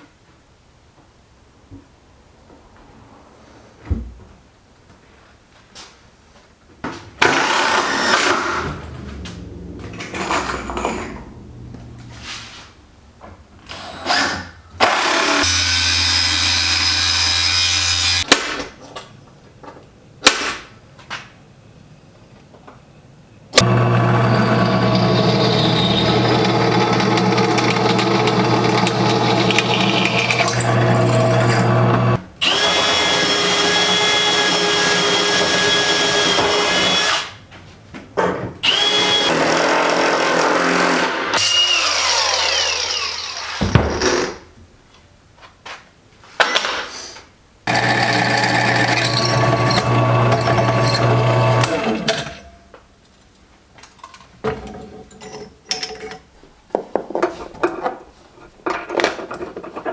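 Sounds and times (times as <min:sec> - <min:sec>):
power tools whining: 0:07.2 - 0:12.2, 0:13.7 - 0:18.3, 0:23.6 - 0:37.3, 0:38.6 - 0:43.7, 0:47.7 - 0:52.4.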